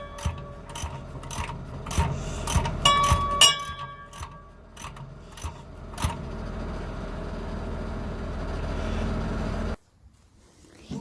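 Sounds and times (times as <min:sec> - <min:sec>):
metal tools clanking on steel: 0:00.0 - 0:06.2.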